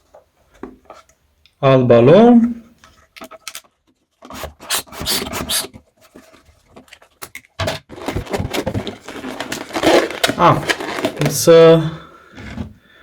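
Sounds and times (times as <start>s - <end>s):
balloon rubbing and rasping: 4.2s - 5.8s, 8.0s - 11.5s.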